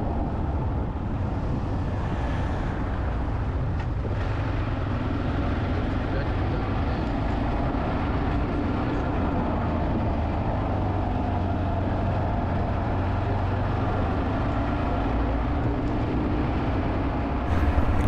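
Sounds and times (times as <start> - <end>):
motorcycle engine running: 17.5 - 18.0
steady rushing noise: 17.5 - 18.0.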